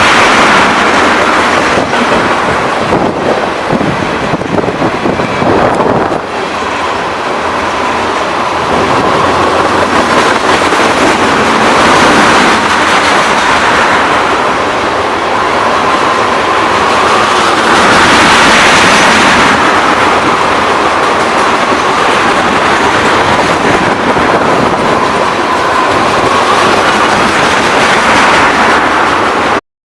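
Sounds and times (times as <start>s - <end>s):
freight train wheels clattering: 0.0s - 29.6s.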